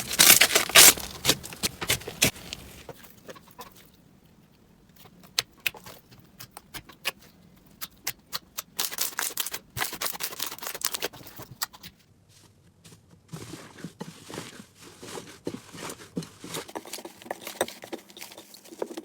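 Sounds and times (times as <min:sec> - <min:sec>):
slime crackling and popping: 0:00.0 - 0:02.8.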